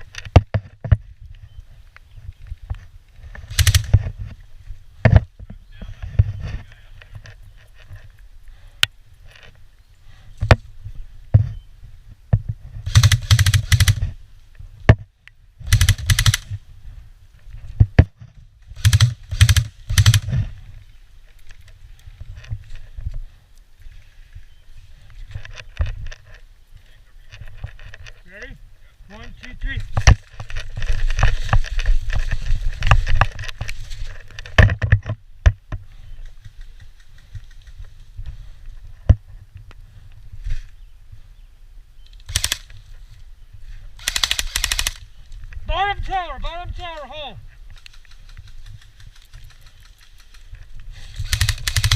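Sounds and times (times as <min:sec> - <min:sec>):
airsoft guns firing: 0:03.5 - 0:04.0, 0:12.9 - 0:14.1, 0:15.6 - 0:16.6, 0:18.8 - 0:20.4, 0:42.3 - 0:42.7, 0:44.0 - 0:45.0, 0:51.2 - 0:51.9.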